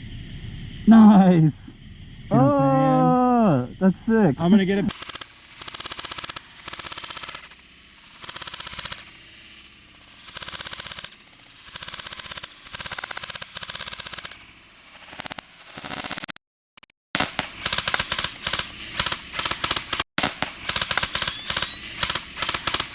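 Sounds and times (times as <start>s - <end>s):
airsoft gun firing bursts: 4.9s - 16.4s, 17.2s - 22.9s.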